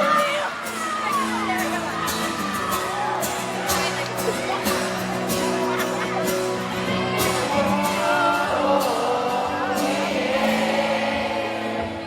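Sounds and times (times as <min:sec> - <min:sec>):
live band accompaniment: 0:00.0 - 0:12.0
person singing: 0:06.7 - 0:12.0.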